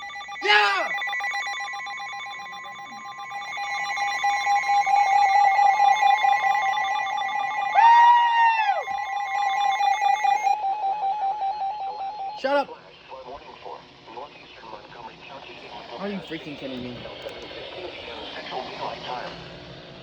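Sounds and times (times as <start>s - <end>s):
warbling electronic alarm tone: 0.0s - 12.6s
person shouting excitedly: 0.4s - 1.0s.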